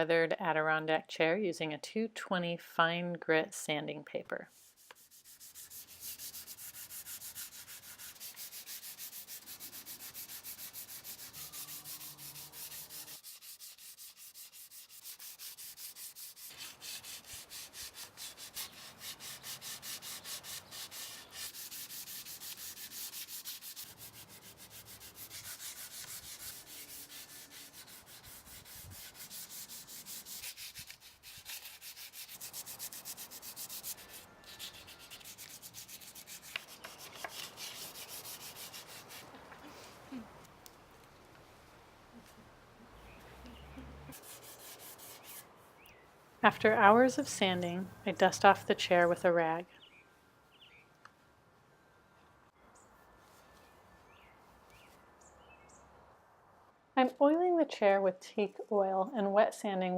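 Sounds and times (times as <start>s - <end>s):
sandpaper rubbing on wood: 4.5s - 39.3s, 44.1s - 45.4s.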